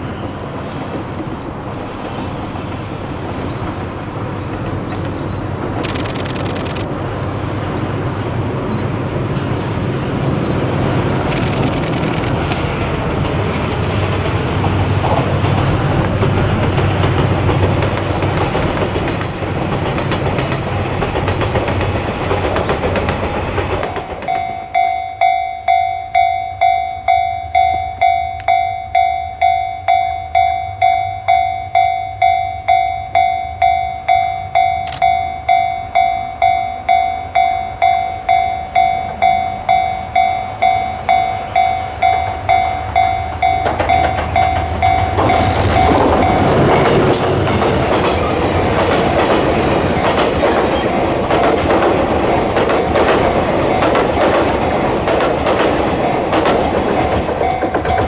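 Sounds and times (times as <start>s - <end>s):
train wheels rumbling on rails: 0.0s - 58.0s
level crossing warning bell: 23.8s - 58.0s.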